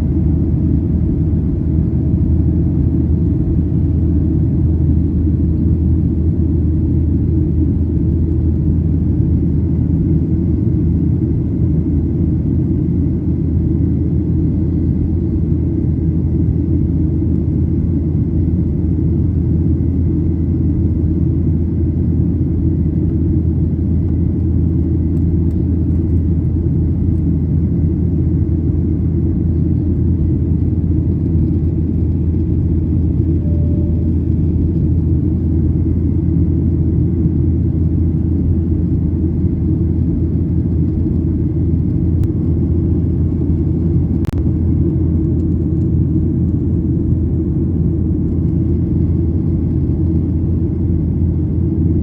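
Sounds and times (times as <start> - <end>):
engine and airflow rumble: 0.0 - 52.0
faint high whine: 31.4 - 38.2.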